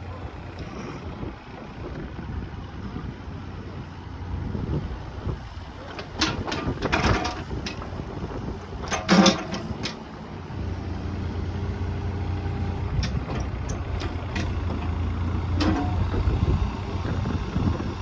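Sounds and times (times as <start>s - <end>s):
diesel engine starting and idling: 0.0s - 18.0s
sharp clicks and knocks: 5.9s - 7.9s, 8.8s - 10.0s, 12.9s - 16.2s.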